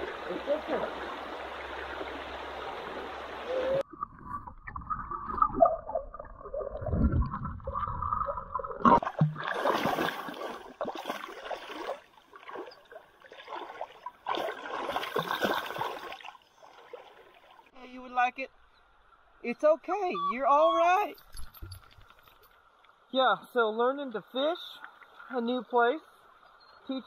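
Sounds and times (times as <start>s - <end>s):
stream water gurgling and splashing: 0.0s - 17.8s, 24.7s - 26.7s.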